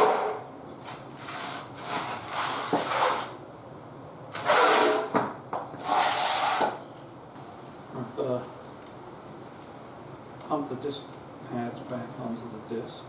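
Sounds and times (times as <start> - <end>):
motorcycle stand scraping on floor: 1.2 - 3.4, 4.4 - 5.1, 5.8 - 6.8.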